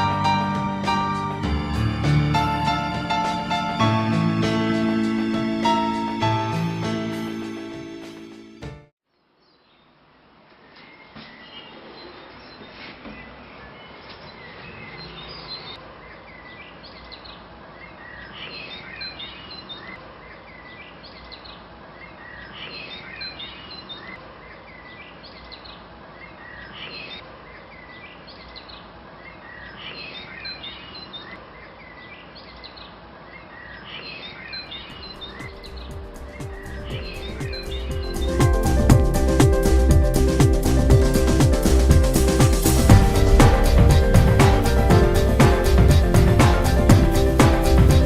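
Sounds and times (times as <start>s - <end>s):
songbirds chirping: 9.1s - 39.8s.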